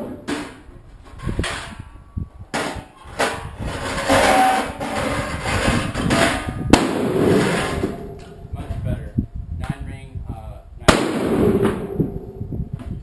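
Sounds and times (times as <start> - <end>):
wind gusting on microphone: 0.0 - 13.0
sharp cracks: 6.7 - 8.4, 10.9 - 12.4.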